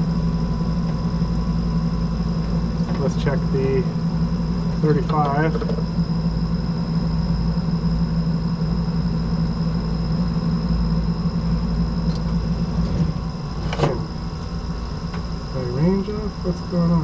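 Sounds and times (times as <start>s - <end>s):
low machine hum: 0.0s - 17.0s
sharp click: 12.1s - 12.4s.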